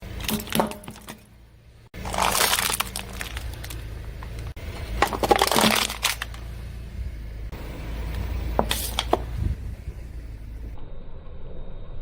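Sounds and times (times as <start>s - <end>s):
objects crunching under car tyre: 0.0s - 7.1s, 8.0s - 9.6s
low rumble: 1.0s - 12.0s.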